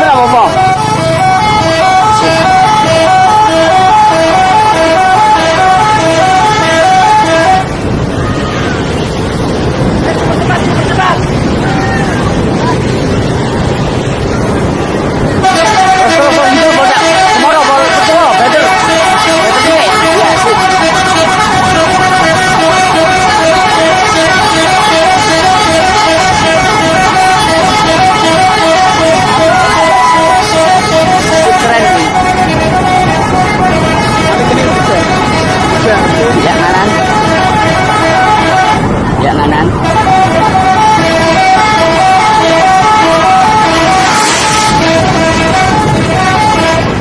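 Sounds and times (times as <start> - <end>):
bus musical horn melody: 0.0 - 8.1, 13.2 - 47.0
musical air horn two-note tune: 39.8 - 47.0.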